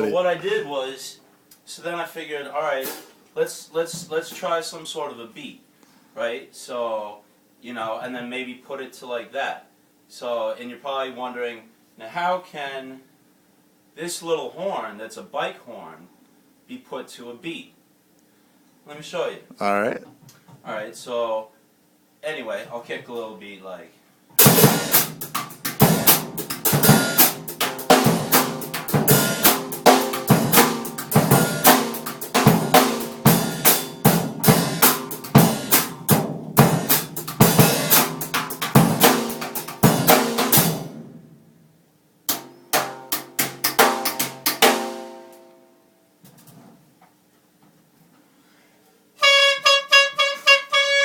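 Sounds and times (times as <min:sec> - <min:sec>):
drum kit beat: 0:02.8 - 0:03.1, 0:24.4 - 0:41.0, 0:42.3 - 0:45.3.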